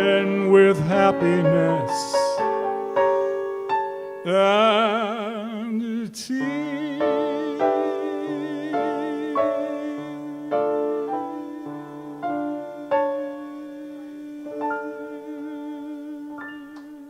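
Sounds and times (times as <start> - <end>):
person singing long note: 0.0 - 2.6, 6.2 - 17.0
piano chords: 0.0 - 17.0.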